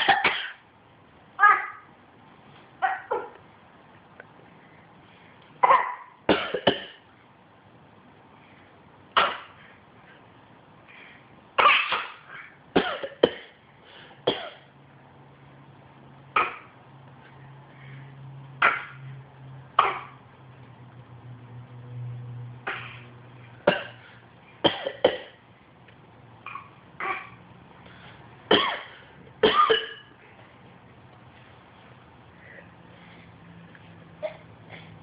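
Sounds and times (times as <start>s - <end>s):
person coughing: 0.0s - 0.6s, 5.6s - 7.0s, 12.8s - 13.6s, 23.7s - 24.0s, 28.5s - 30.1s.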